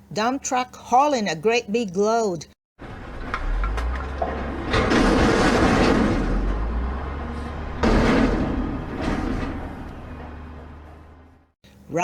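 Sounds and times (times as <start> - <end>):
truck engine rumble: 2.8 - 11.5.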